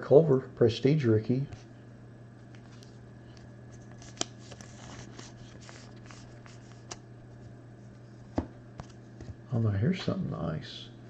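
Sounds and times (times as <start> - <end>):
cards sliding against each other: 2.6 - 7.0.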